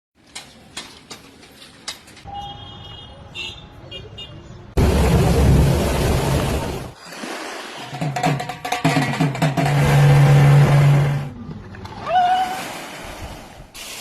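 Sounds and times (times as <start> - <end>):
traffic noise: 0.2 - 7.0.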